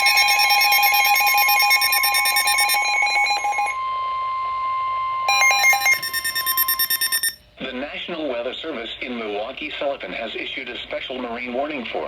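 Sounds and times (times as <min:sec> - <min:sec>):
rapidly pulsing electronic beeping: 0:00.0 - 0:03.8, 0:05.3 - 0:07.4
steady alert tone: 0:00.0 - 0:03.8, 0:05.3 - 0:07.4.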